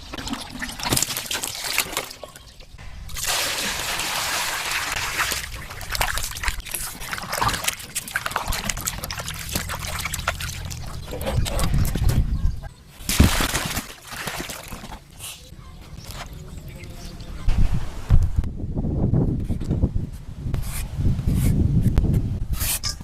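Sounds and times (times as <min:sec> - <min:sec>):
water sloshing and splashing: 0:00.0 - 0:15.4.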